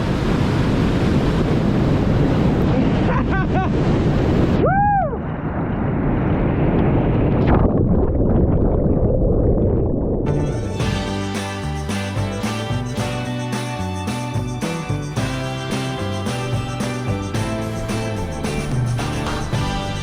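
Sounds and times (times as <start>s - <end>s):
waterfall rushing: 10.4s - 20.0s.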